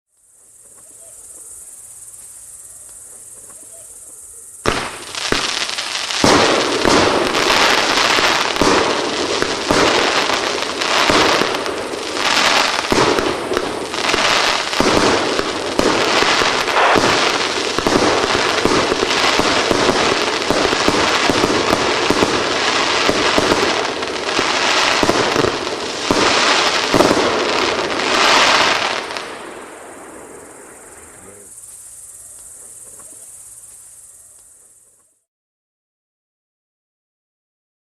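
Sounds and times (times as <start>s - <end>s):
fireworks shots firing: 4.6s - 31.5s
crackling firework bursts: 4.6s - 35.0s.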